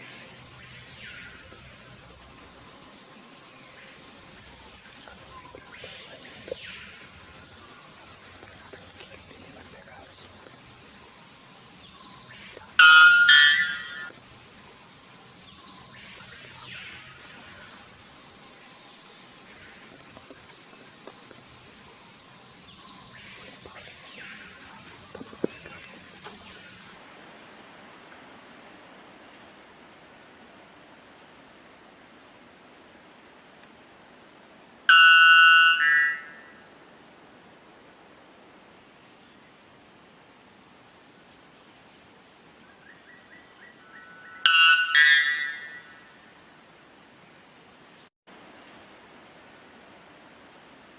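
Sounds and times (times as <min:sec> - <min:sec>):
high-pitched insect drone: 0:00.0 - 0:27.0, 0:43.9 - 0:48.1
faint bird calls: 0:03.1 - 0:21.3
bird two-note metallic call: 0:12.8 - 0:14.1, 0:34.9 - 0:36.5, 0:44.4 - 0:46.0.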